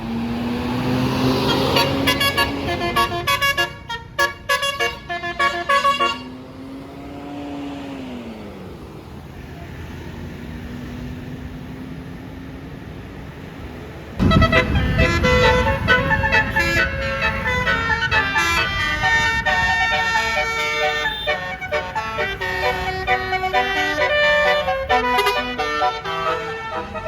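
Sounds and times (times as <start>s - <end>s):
vehicle engine droning: 0.0s - 27.0s
multi-tone air horn melody: 1.4s - 6.4s, 14.2s - 27.0s.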